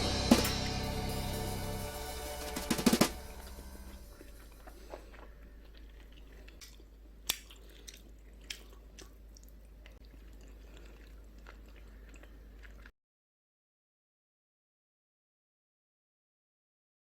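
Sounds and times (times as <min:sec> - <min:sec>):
low hum: 0:00.0 - 0:06.2
soft chewing: 0:03.9 - 0:12.9.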